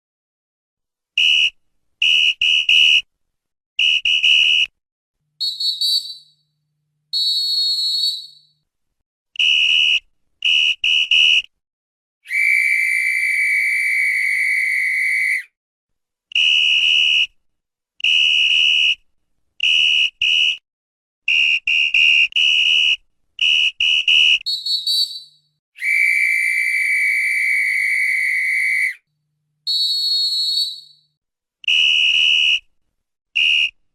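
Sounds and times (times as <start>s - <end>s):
referee's whistle blasts: 5.4s - 6.3s, 7.2s - 8.4s, 12.3s - 15.5s, 24.4s - 29.0s, 29.7s - 31.0s.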